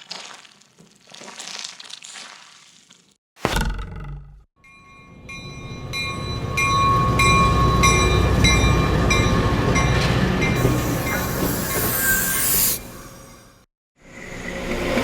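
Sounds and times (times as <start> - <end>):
train rumbling past: 5.2 - 15.0.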